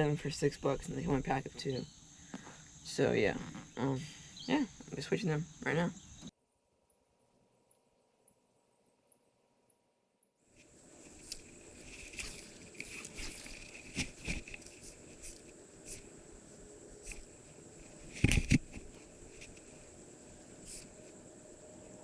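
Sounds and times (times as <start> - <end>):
faint hiss: 0.0 - 6.3, 10.5 - 22.0
fishing tackle handling: 10.6 - 16.1.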